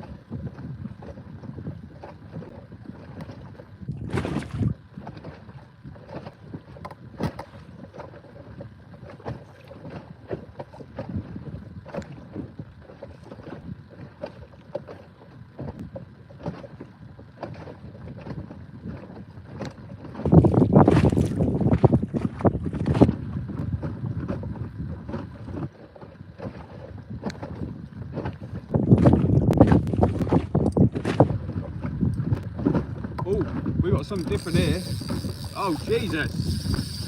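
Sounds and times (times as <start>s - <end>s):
wind buffeting microphone: 0.0s - 7.4s, 17.8s - 37.0s
water lapping against hull: 0.0s - 37.0s.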